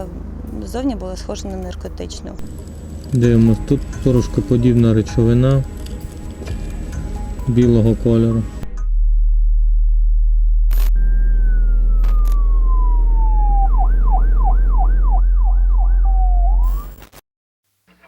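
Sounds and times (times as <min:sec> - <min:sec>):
police siren wailing and yelping: 0:11.0 - 0:16.9.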